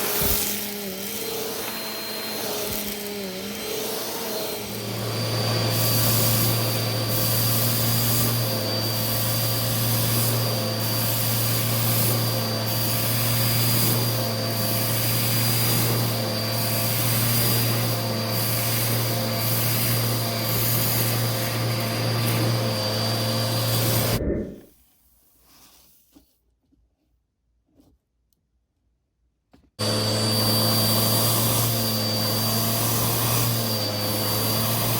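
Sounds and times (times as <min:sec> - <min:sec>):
vacuum cleaner running: 0:00.0 - 0:24.6, 0:29.8 - 0:34.9.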